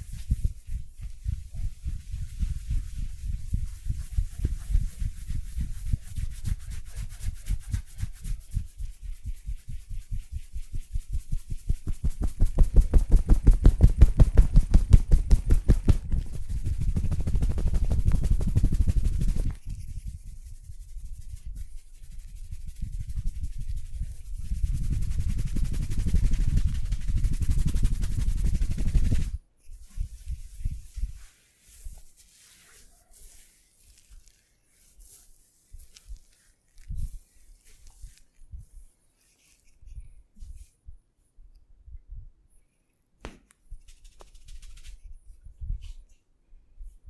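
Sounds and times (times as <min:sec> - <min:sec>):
hands striking body rhythmically: 0:11.4 - 0:19.4.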